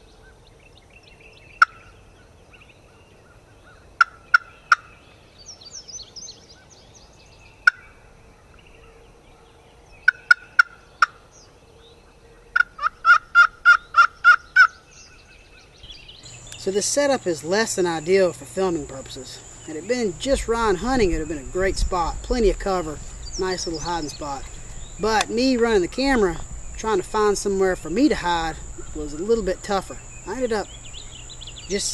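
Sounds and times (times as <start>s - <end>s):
faint songbird chirps: 0.0s - 31.9s
turkey yelping: 12.5s - 14.8s.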